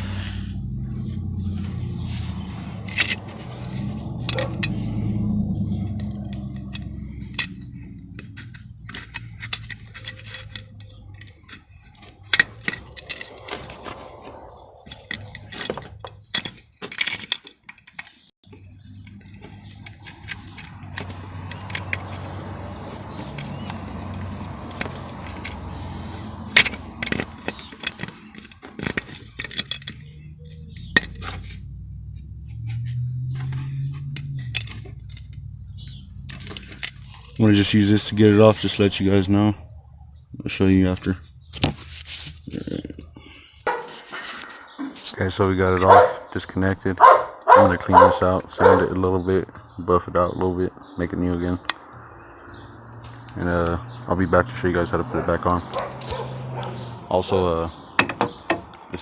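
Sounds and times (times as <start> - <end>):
low rumble: 0.0 - 9.2, 11.9 - 16.3
clicks taps and scrapes of handling parts: 0.9 - 14.2, 14.8 - 31.7, 32.5 - 39.0, 40.8 - 45.9, 52.9 - 53.9, 54.6 - 59.0.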